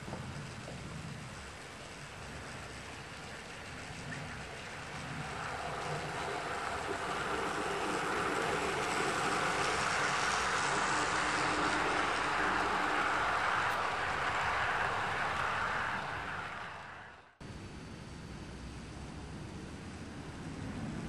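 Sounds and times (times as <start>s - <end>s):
wheels on rails: 0.0s - 17.4s
model train motor hum: 5.3s - 13.8s.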